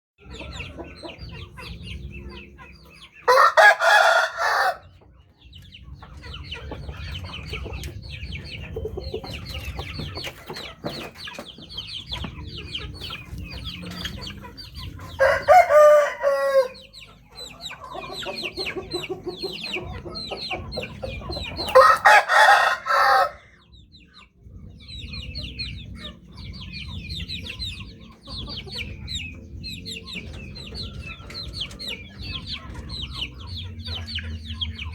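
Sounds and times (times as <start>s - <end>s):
chickens clucking: 0.2s - 34.9s
roosters crowing: 3.2s - 5.0s, 13.7s - 23.7s.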